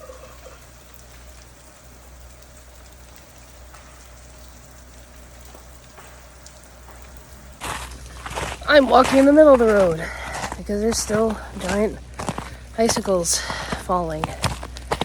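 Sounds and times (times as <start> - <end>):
water drops pattering: 0.0 - 15.0
faint ticks: 0.1 - 8.7.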